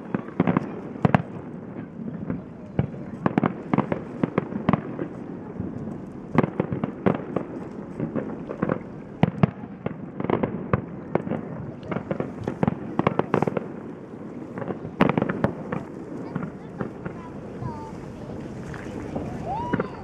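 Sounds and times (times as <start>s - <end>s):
fireworks bursting and crackling: 0.0s - 20.0s
loud fireworks bangs: 0.0s - 20.0s.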